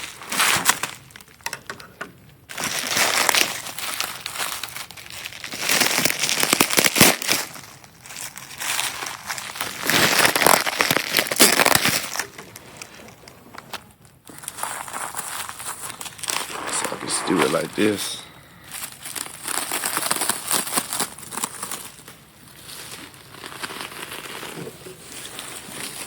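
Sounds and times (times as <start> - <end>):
packing material crinkling: 0.0 - 1.6, 2.5 - 26.0.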